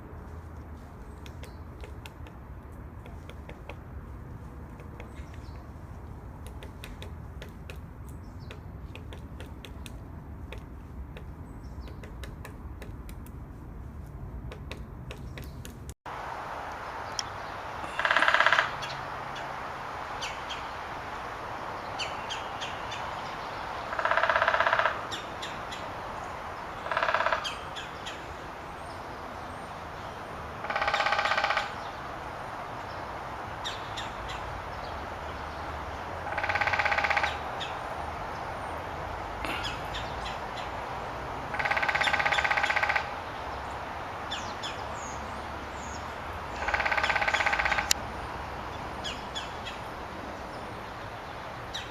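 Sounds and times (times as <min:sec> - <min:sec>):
woodpecker drumming: 0:01.0 - 0:16.0, 0:17.2 - 0:19.5, 0:23.8 - 0:25.9, 0:26.8 - 0:28.3, 0:30.6 - 0:31.8, 0:36.2 - 0:37.8, 0:41.5 - 0:43.2, 0:45.8 - 0:48.0.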